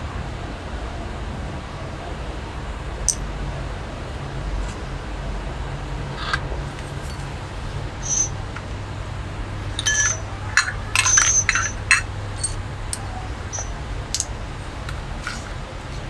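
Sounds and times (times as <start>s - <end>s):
metallic clinks and taps: 3.1s - 3.3s, 6.8s - 7.4s, 8.0s - 8.7s, 9.8s - 15.6s.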